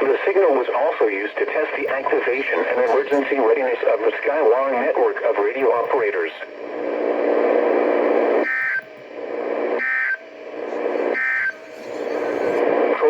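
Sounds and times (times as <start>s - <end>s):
buzzy radio noise: 0.0s - 13.0s
two-tone digital data bursts: 9.8s - 12.6s.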